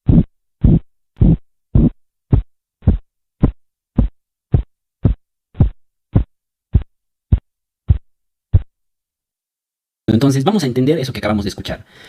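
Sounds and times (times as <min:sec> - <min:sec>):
dull heartbeat thumps: 0:00.0 - 0:08.7.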